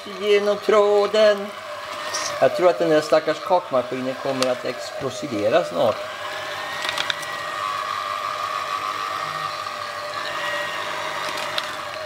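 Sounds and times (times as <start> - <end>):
electric hand mixer whining: 0.0 - 12.0
mixer clicks: 0.0 - 12.0.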